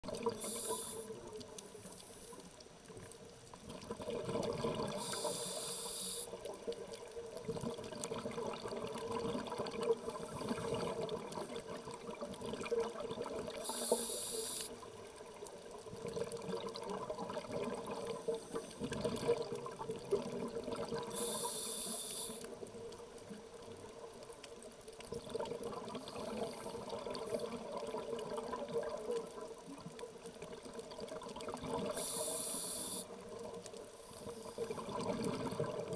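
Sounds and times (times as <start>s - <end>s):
bubbling exhale: 0.1s - 1.2s, 3.8s - 6.4s, 7.8s - 14.9s, 16.1s - 22.4s, 31.3s - 33.2s
regulator hissing inhale: 0.2s - 2.5s, 4.9s - 6.4s, 13.6s - 14.9s, 21.0s - 22.6s, 31.9s - 33.2s.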